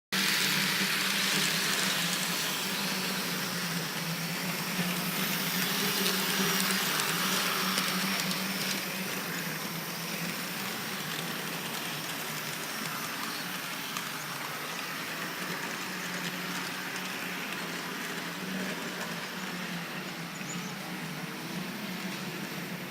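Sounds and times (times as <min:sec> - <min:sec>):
electric motor hum: 0:00.2 - 0:22.9
wheel and gear running noise: 0:00.2 - 0:22.9.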